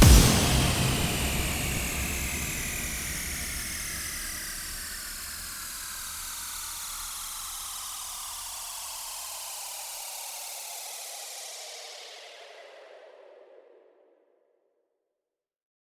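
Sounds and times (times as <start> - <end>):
low bass: 0.0 - 5.6
synthesized white-noise sweep: 0.0 - 7.4.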